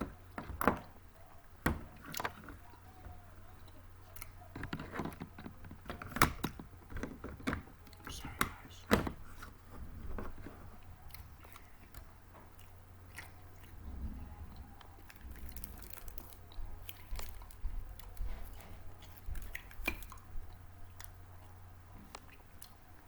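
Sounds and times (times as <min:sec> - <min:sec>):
person chewing snack food: 0:14.6 - 0:23.0.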